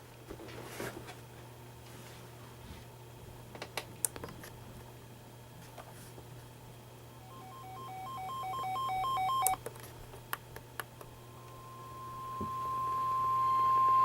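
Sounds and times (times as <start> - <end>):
steady alarm tone: 7.2 - 9.6, 11.2 - 14.0
two-pitch alert alarm: 7.2 - 9.6, 11.2 - 14.0.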